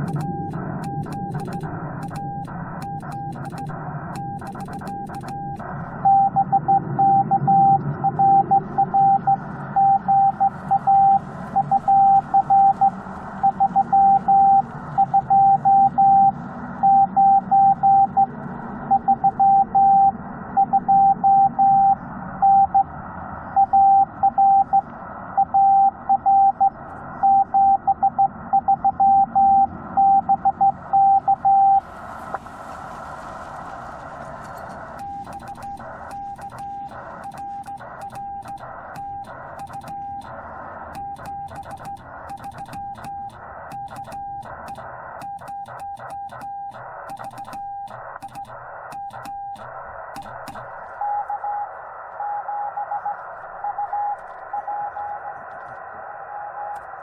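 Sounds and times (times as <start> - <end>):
morse code beeps: 0.0 - 18.3, 18.9 - 22.8, 23.6 - 24.8, 25.4 - 31.8, 35.0 - 40.3, 41.0 - 49.6
radio band noise hiss: 31.8 - 57.0.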